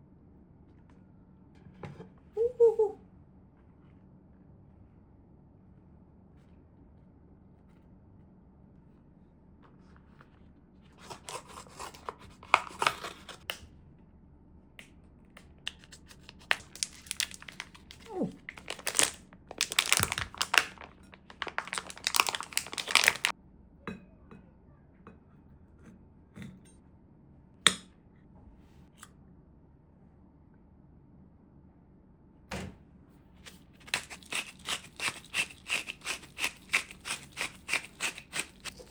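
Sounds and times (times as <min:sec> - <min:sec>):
plastic packaging crinkling: 0:11.0 - 0:13.4, 0:15.7 - 0:23.3, 0:33.4 - 0:38.9.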